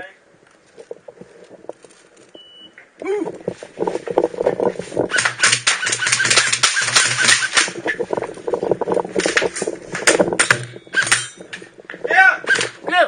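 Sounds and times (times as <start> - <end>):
airsoft guns firing: 5.1 - 7.8.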